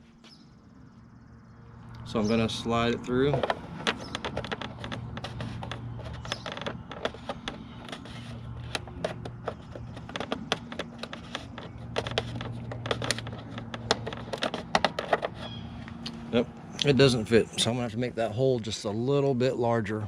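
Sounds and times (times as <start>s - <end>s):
low steady hum: 0.0s - 20.0s.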